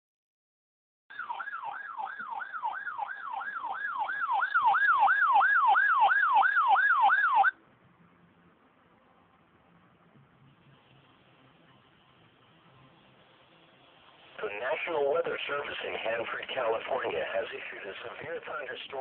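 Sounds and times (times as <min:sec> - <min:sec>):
wailing siren alarm tone: 0:01.1 - 0:07.6.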